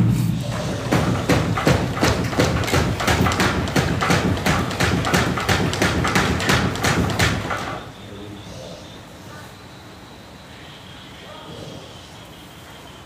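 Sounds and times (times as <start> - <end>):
rapid thumps and taps: 0.6 - 7.8.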